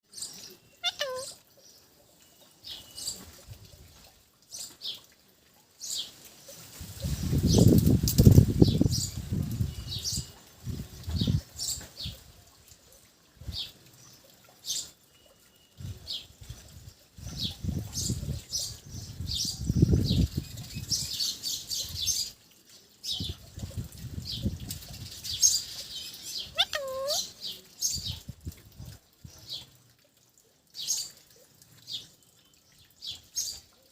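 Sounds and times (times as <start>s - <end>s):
parakeet chirping: 0.8s - 1.4s, 26.5s - 27.3s.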